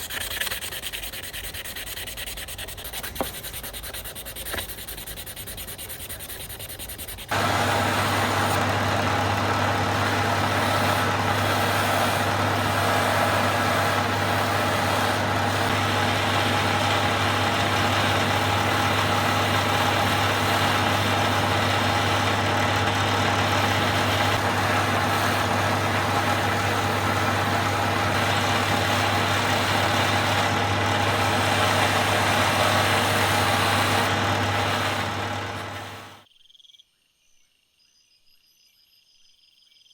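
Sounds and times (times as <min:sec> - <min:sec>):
rubbing: 0:00.0 - 0:36.0
motor-driven machine droning: 0:07.3 - 0:36.2.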